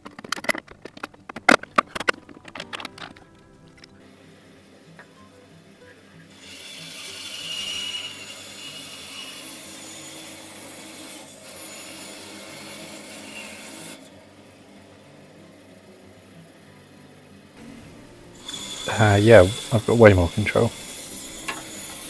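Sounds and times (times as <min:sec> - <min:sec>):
bandsaw cutting wood: 0:04.1 - 0:22.0
bandsaw running: 0:05.7 - 0:22.0.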